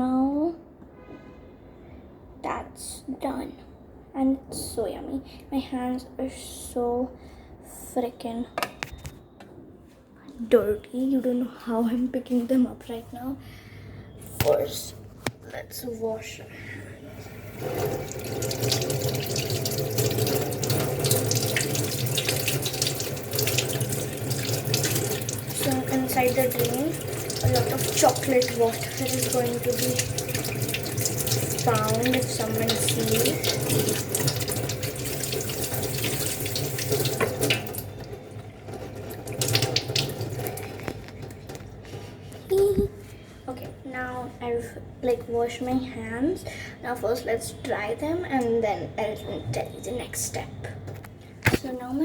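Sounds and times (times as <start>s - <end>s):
tap running into sink: 17.6s - 41.7s.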